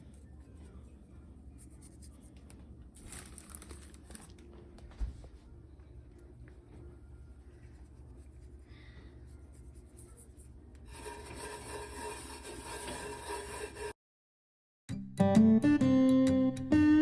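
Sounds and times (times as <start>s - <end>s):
hands rubbing dough in a pan: 7.2s - 14.0s.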